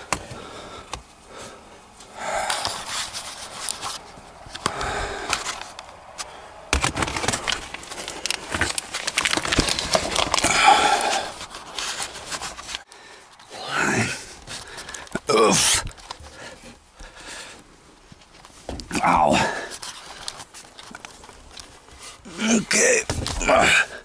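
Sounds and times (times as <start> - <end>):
man breathing hard: 0.0 - 6.7, 9.9 - 17.9, 19.2 - 20.4
rustling and scraping: 0.0 - 13.5, 14.1 - 24.0
man grunting: 15.2 - 15.8, 18.9 - 19.7, 22.3 - 24.0.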